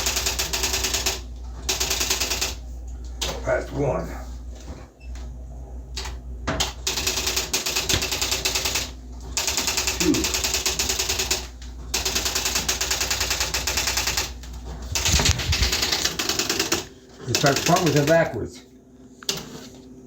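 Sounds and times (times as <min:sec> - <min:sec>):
electronic typewriter clatter: 0:00.0 - 0:02.6, 0:06.0 - 0:18.3.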